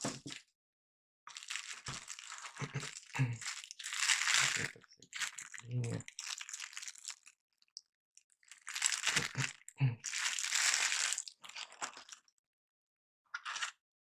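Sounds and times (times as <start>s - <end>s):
packaging crinkling: 1.3s - 7.3s, 8.4s - 12.2s.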